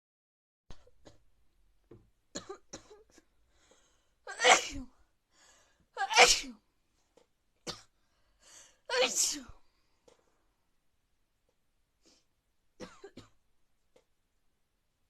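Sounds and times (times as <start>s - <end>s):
intake of breath: 3.5s - 4.2s, 5.3s - 5.9s, 8.0s - 8.9s
person sneezing: 4.3s - 4.9s, 6.0s - 6.6s, 8.9s - 9.5s.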